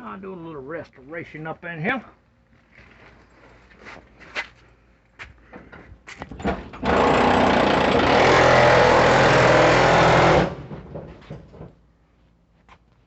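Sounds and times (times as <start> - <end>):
motor-driven machine running: 6.8 - 10.6.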